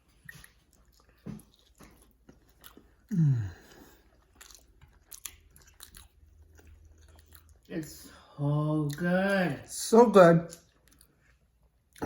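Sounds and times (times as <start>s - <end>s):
crunchy food chewing: 0.0s - 7.8s, 10.5s - 12.0s.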